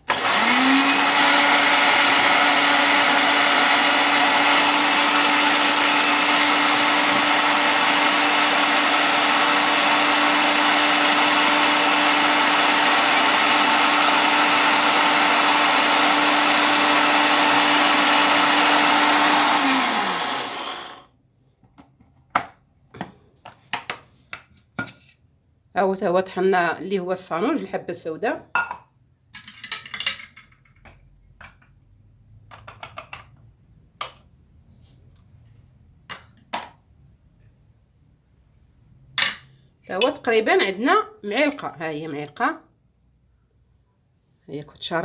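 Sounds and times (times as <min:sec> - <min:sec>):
electric grinder motor: 0:00.1 - 0:21.0.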